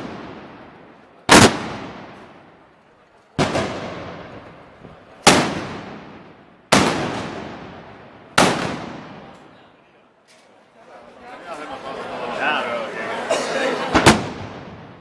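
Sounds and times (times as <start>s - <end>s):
loud gunshots echoing: 1.3s - 2.3s, 3.4s - 4.5s, 5.2s - 9.3s, 13.9s - 15.0s.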